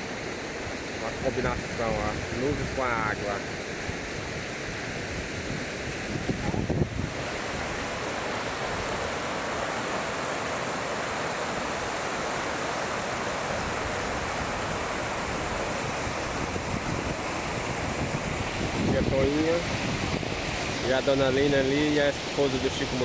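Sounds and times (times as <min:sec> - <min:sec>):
waterfall rushing: 0:00.0 - 0:23.0
wind gust on microphone: 0:01.2 - 0:09.1, 0:13.5 - 0:23.0.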